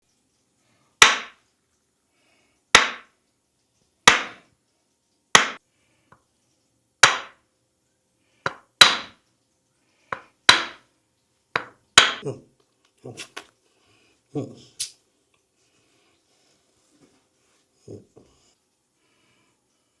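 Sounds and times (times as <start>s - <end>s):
sharp hand slaps: 2.8s - 3.1s, 4.1s - 4.4s.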